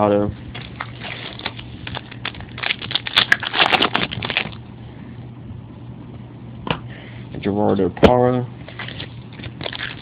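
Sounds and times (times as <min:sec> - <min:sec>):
card wrappers crinkling: 0:00.5 - 0:04.6, 0:08.7 - 0:10.0.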